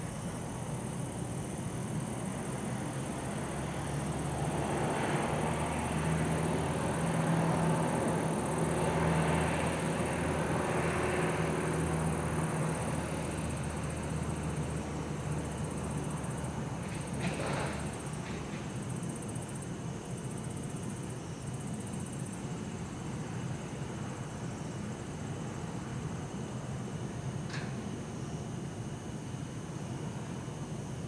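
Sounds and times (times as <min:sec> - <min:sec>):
steady low hum: 0:00.0 - 0:31.0
vehicle rumble passing: 0:02.7 - 0:18.7.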